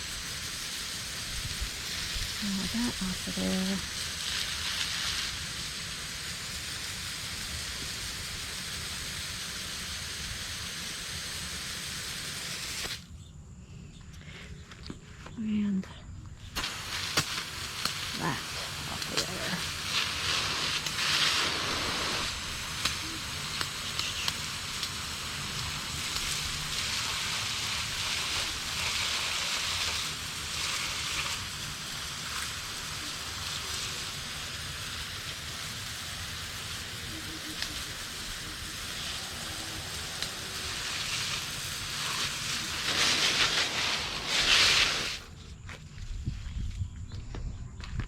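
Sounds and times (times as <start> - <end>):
hose spraying water on floor: 0.0 - 13.1, 16.5 - 45.4.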